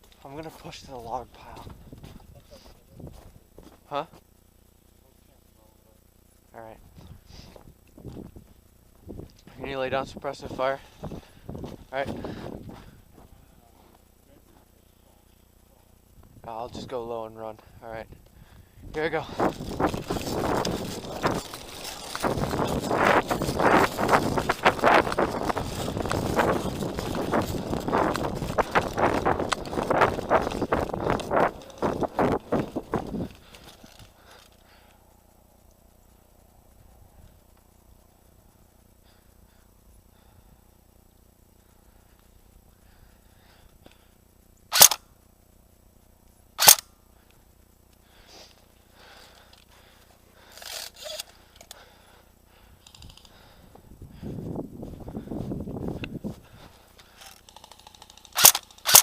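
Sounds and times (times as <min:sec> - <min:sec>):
rustling and scuffing: 0:00.0 - 0:04.3, 0:19.3 - 0:34.2
running footsteps in snow: 0:00.0 - 0:04.4, 0:10.8 - 0:14.0, 0:19.2 - 0:34.4, 0:53.4 - 0:57.2
airsoft gun shots: 0:44.7 - 0:45.0, 0:46.6 - 0:46.9, 0:58.4 - 0:59.0.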